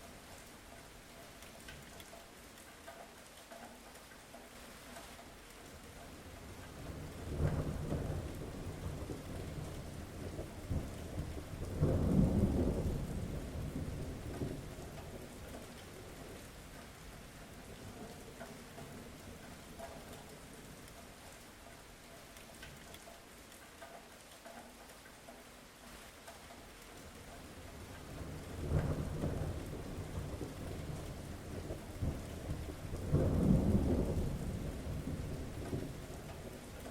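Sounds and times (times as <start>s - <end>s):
steady rain: 0.0s - 36.9s
rolling thunder: 6.8s - 15.3s, 28.0s - 36.9s.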